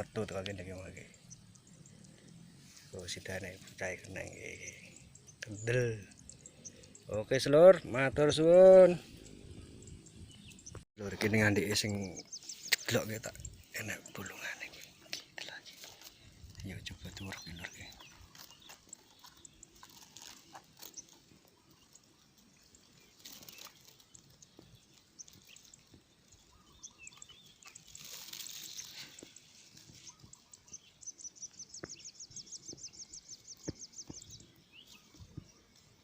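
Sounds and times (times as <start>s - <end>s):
small clicks and rustles: 14.7s - 30.7s.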